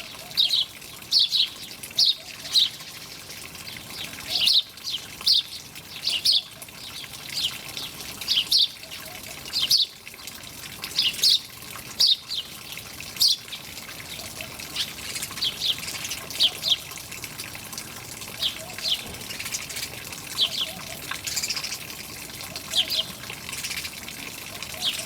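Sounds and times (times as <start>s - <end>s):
running water hiss: 0.0s - 25.0s
songbird chirping: 18.4s - 21.9s.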